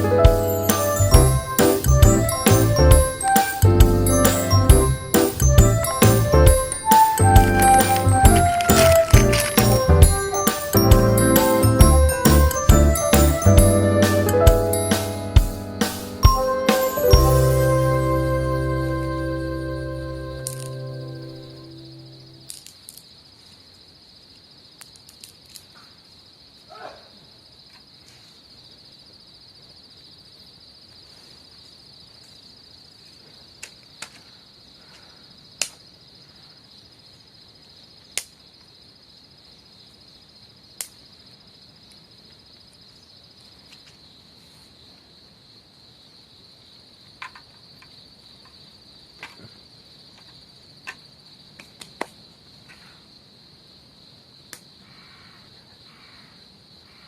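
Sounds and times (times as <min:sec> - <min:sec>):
insects trilling: 0:00.0 - 0:14.0, 0:14.6 - 0:57.0
sharp snaps and clicks: 0:07.8 - 0:09.9, 0:24.8 - 0:25.7, 0:35.6 - 0:35.8, 0:38.2 - 0:38.4, 0:40.8 - 0:41.0, 0:51.6 - 0:52.2.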